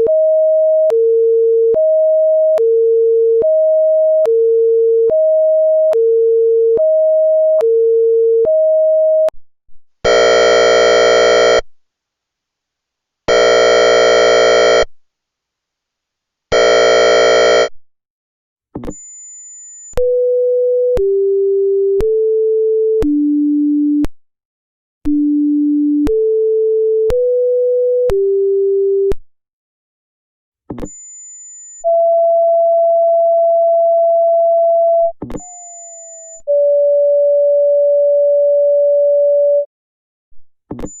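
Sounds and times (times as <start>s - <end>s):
electronic siren tones: 10.1s - 11.6s, 13.3s - 14.9s, 16.6s - 17.7s.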